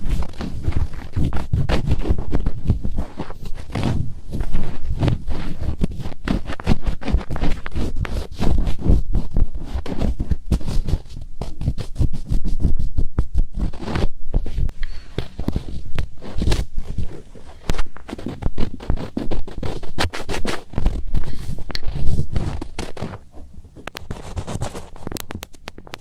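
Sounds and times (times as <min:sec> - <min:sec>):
fingertips scratching microphone: 0:00.0 - 0:26.0.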